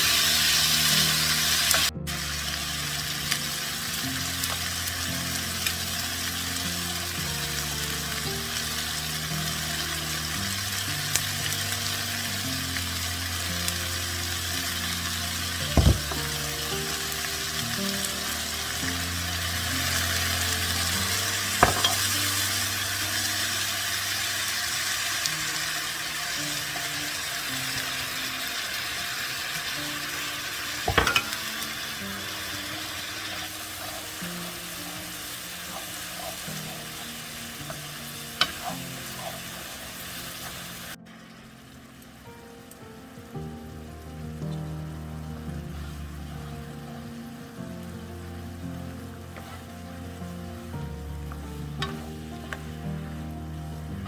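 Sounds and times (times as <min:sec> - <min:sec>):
background music with low notes: 0:00.0 - 0:54.0
food sizzling in a pan: 0:00.0 - 0:54.0
sharp knocks: 0:15.8 - 0:16.3.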